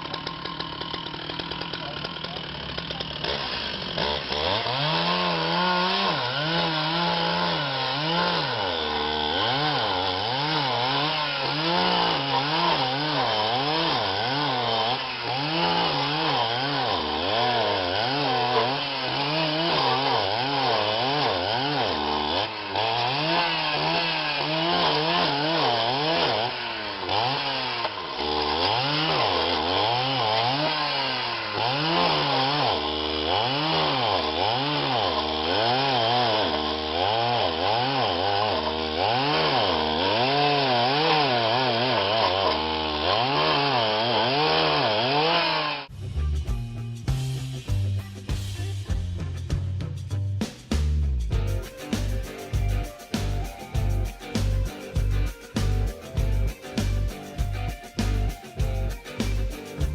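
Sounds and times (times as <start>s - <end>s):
small petrol engine running: 0.0s - 35.9s, 51.4s - 59.9s.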